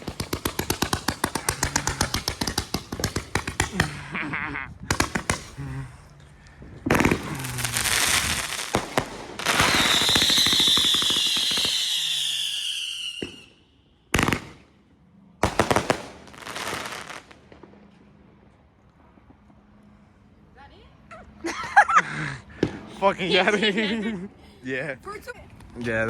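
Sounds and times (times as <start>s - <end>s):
fireworks bangs: 0.0s - 4.0s, 4.8s - 5.6s, 6.8s - 14.7s, 15.4s - 18.0s
fireworks crackling shots: 0.0s - 5.8s, 6.8s - 14.8s, 15.4s - 18.2s
fireworks hiss and falling whistle: 9.5s - 13.6s.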